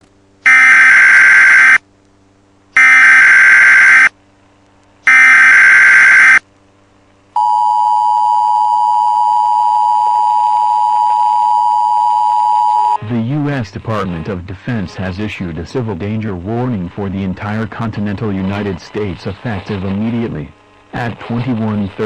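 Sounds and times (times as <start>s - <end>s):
buzzy digital data bursts: 2.8s - 4.1s, 5.1s - 6.4s
two-tone attention signal: 5.1s - 6.4s.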